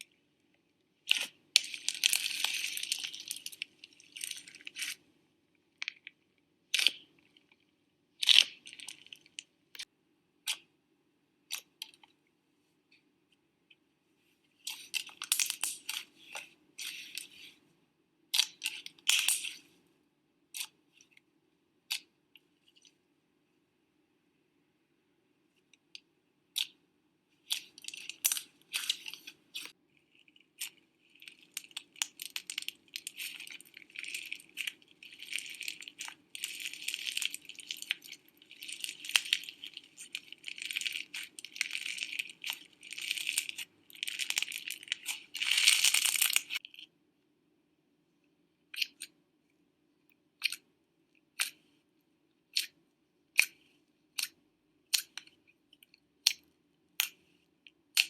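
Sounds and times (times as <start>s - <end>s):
slime crackling and popping: 27.5s - 46.6s.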